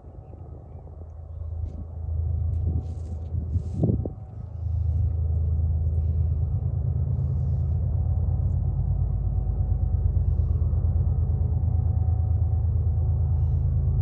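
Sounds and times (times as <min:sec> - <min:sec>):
diesel locomotive rumble: 0:00.0 - 0:14.0.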